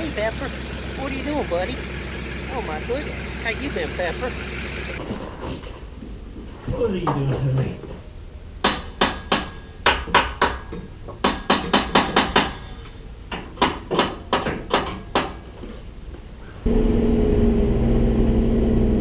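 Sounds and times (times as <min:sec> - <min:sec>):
truck engine running: 0:00.0 - 0:05.0.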